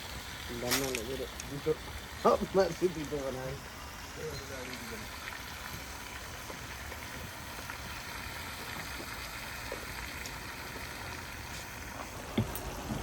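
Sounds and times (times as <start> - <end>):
gas burner rushing: 11.6 - 13.0.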